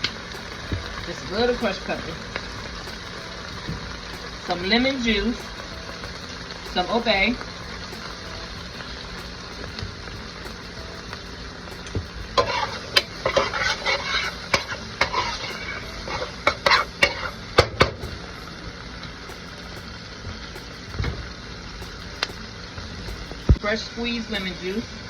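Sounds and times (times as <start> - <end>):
vegetables sizzling in a pan: 0.0 - 25.0
utensil scraping a pan: 12.2 - 17.8.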